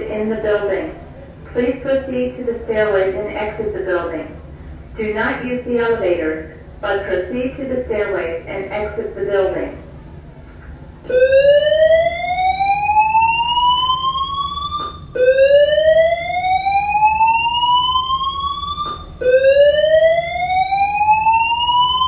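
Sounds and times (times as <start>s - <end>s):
fire alarm slow-whoop tone: 11.1s - 22.0s.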